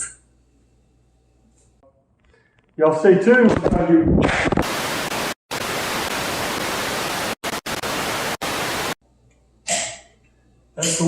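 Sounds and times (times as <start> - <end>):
loud static hiss: 3.1 - 9.0.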